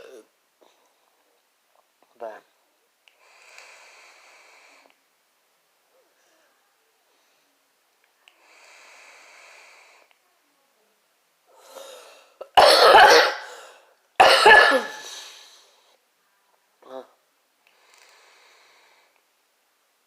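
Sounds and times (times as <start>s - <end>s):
e-cigarette click and hiss: 3.1s - 3.8s, 17.6s - 18.3s
person coughing: 12.4s - 13.6s, 14.2s - 15.2s.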